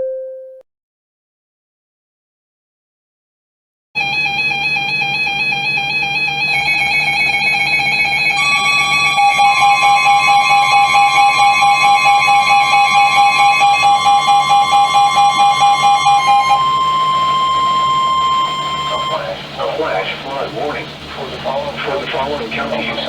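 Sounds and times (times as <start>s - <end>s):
electronic alert tones: 4.0s - 19.6s
pulsing beat: 4.1s - 23.0s.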